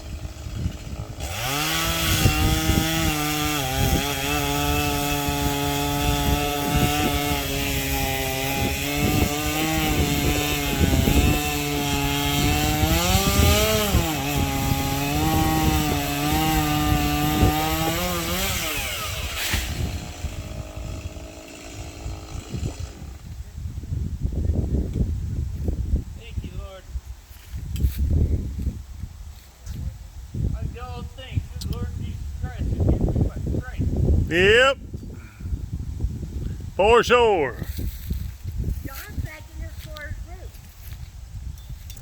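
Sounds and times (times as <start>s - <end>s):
chainsaw cutting branches: 0.0s - 23.4s.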